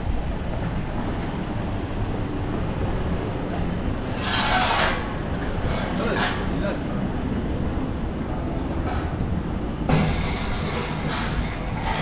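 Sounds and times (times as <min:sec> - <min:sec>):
low rumble of vehicle traffic: 0:00.0 - 0:12.0.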